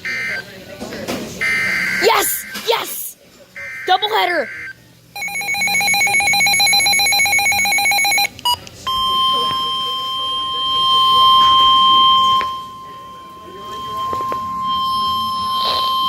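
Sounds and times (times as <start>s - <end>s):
steady high alarm tone: 3.6s - 8.3s, 8.9s - 16.0s
rapid electronic beeping: 3.7s - 8.3s.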